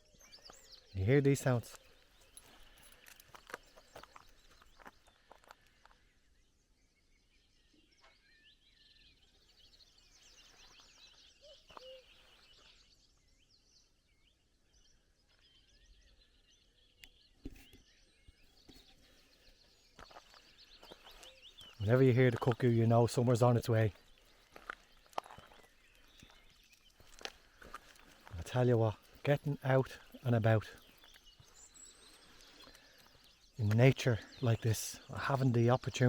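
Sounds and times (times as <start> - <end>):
birds chirping and trilling: 0.0 - 36.0
cuckoo calling: 11.4 - 12.4.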